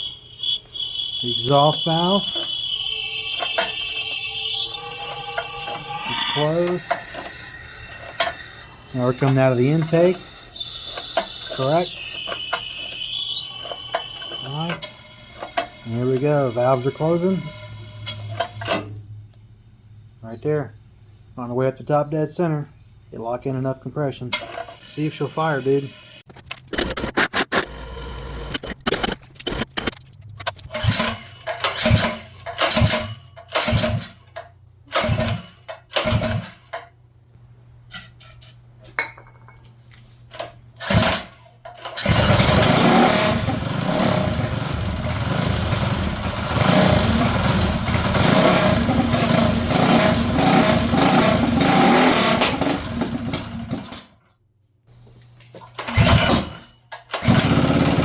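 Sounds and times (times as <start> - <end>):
small engine running: 0.0 - 18.8, 42.0 - 53.8, 57.2 - 58.0
small engine cranking: 0.0 - 18.9, 26.7 - 34.1, 40.8 - 54.0, 57.1 - 58.0.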